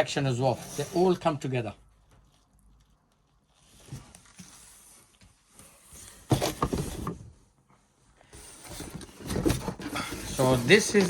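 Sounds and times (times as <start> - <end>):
packaging rustling and scraping: 8.4 - 11.0.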